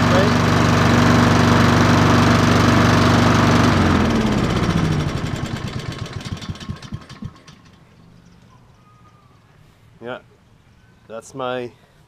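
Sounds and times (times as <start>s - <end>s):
lawn mower engine winding down: 0.0s - 8.8s.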